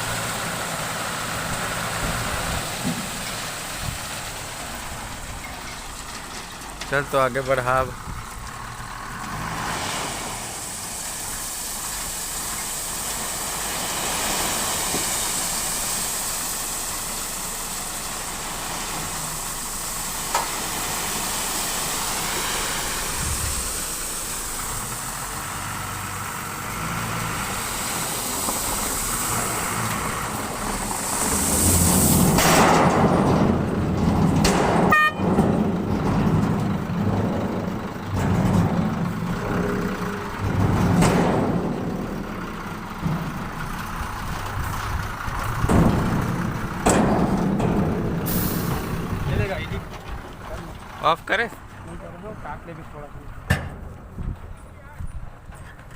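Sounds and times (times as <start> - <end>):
vehicle engine running: 16.7 - 55.9
horn toot: 34.9 - 35.4.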